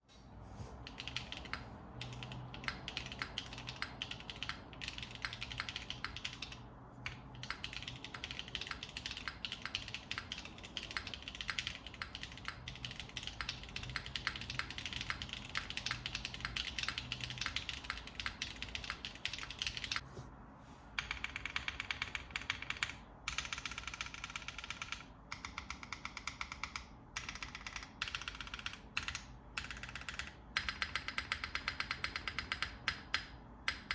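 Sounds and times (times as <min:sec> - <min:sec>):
fast typing on mechanical keyboard: 0:00.8 - 0:20.0, 0:21.0 - 0:33.9.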